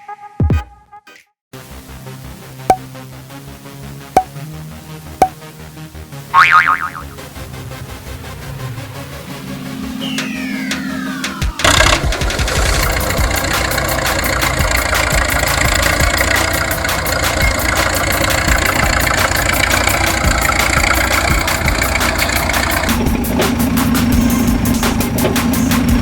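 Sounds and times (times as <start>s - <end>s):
engine idling: 7.0s - 26.0s.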